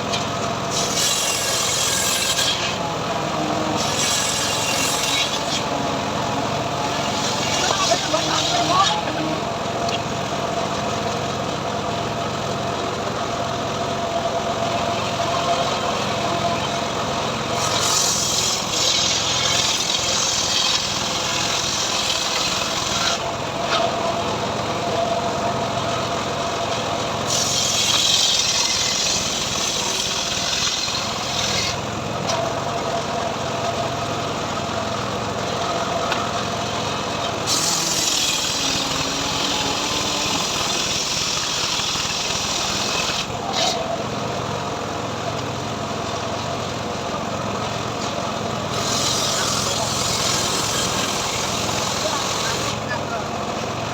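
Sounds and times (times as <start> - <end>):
sawmill engine running: 0.0 - 53.9
harsh hiss: 37.4 - 43.4, 48.7 - 53.0.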